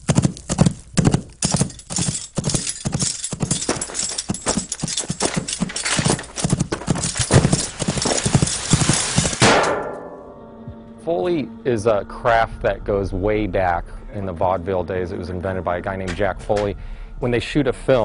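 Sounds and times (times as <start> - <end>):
horse hoofbeats clip-clopping: 0.0 - 9.6.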